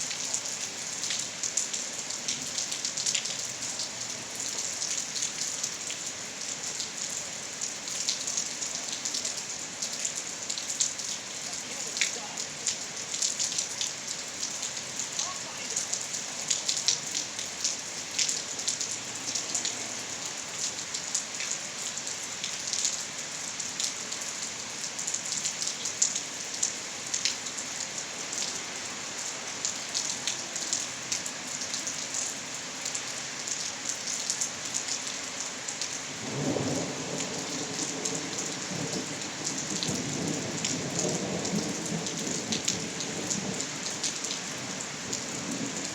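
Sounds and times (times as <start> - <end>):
rain pattering: 0.0 - 45.9
low rumble of thunder: 36.2 - 43.9.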